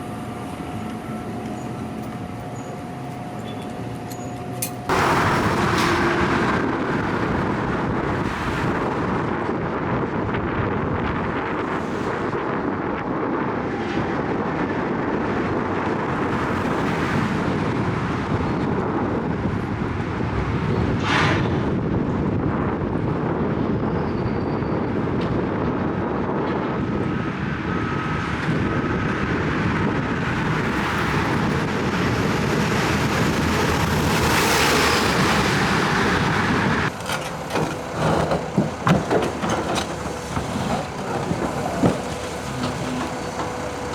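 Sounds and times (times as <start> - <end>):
diesel engine of heavy machinery: 0.0 - 43.9.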